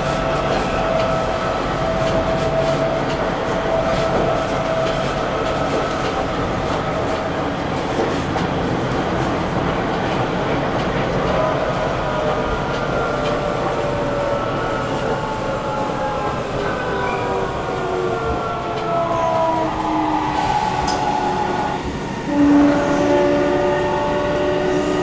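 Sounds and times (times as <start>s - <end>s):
train wheels rumbling on rail: 0.0s - 25.0s
train motor whine: 11.3s - 25.0s.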